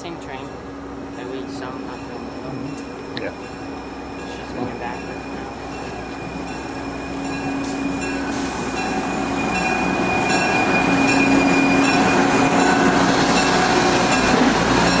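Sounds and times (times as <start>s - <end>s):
diesel railcar rumbling: 0.0s - 15.0s.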